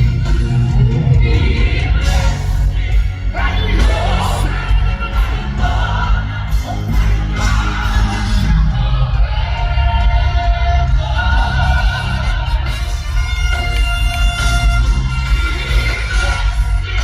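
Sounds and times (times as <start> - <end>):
person singing: 0.0 - 12.9
gospel band playing: 0.0 - 17.0
steady bass: 0.0 - 17.0.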